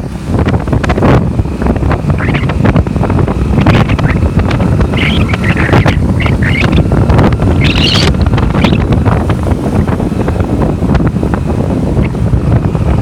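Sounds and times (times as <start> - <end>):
low engine rumble: 0.0 - 13.0
wind buffeting microphone: 0.0 - 13.0
high-pitched wavering sounds: 2.2 - 2.5, 4.9 - 6.9, 7.5 - 8.8.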